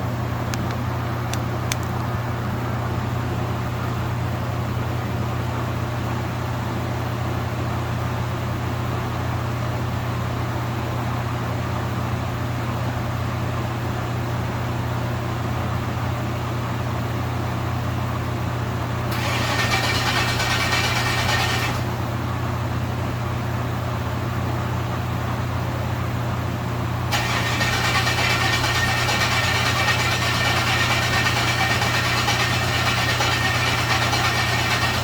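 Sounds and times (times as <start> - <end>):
hiss: 19.1 - 21.9, 27.1 - 35.0
car engine running: 19.1 - 22.0, 27.1 - 35.0.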